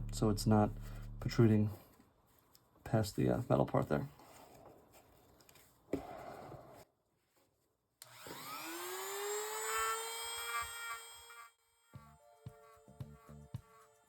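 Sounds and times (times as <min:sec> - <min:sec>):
electric rotary tool whine: 0:08.0 - 0:12.0.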